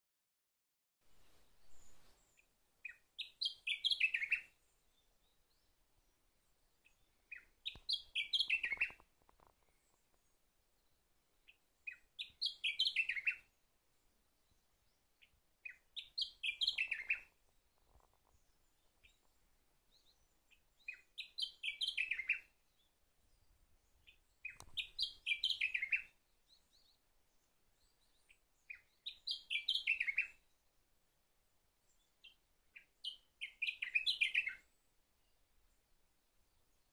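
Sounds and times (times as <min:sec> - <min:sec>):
warbler singing: 0:01.5 - 0:30.7, 0:31.8 - 0:35.6.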